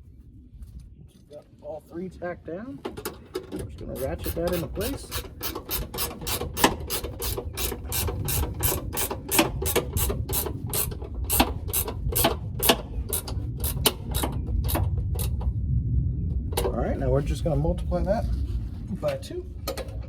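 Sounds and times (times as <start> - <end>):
ratchet wrench clicking: 4.0 - 14.8.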